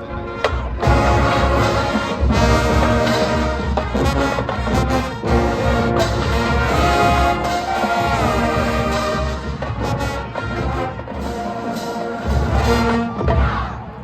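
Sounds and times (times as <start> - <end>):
marching band playing: 0.0 - 14.0.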